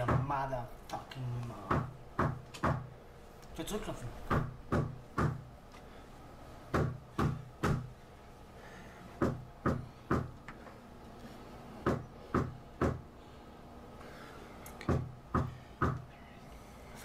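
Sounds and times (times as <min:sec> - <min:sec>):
knocking on a door: 0:00.0 - 0:00.4, 0:01.6 - 0:02.9, 0:04.3 - 0:05.4, 0:06.7 - 0:07.9, 0:09.2 - 0:10.4, 0:11.8 - 0:13.0, 0:14.9 - 0:16.0.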